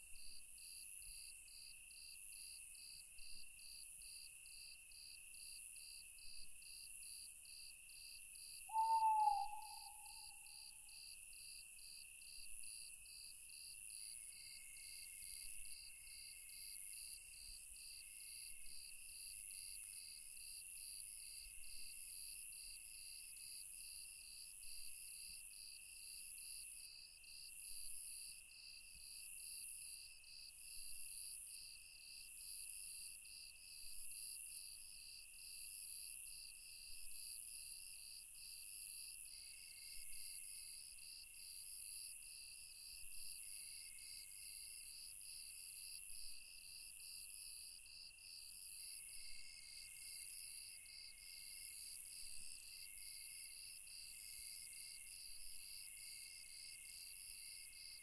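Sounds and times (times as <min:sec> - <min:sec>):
faint cricket trill: 0:00.0 - 0:58.0
cricket high trill: 0:08.7 - 0:10.4
high insect hiss: 0:08.7 - 0:10.4
cricket chirping in fast pulses: 0:08.7 - 0:11.1.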